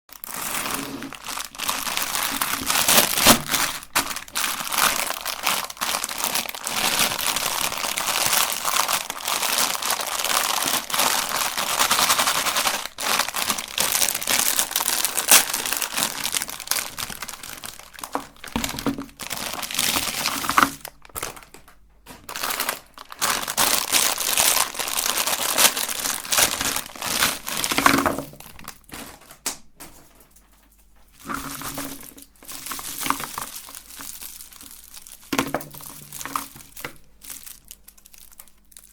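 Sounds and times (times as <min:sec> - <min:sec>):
meat grinder crushing candy: 0:00.1 - 0:21.6, 0:22.2 - 0:28.6.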